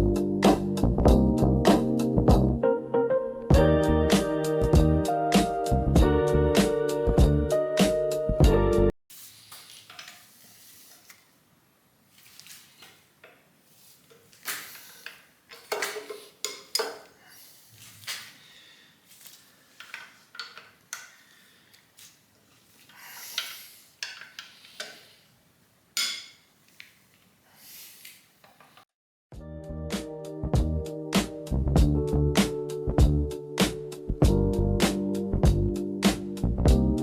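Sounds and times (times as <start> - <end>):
tools and metal parts clinking: 15.0 - 17.1, 19.8 - 21.2.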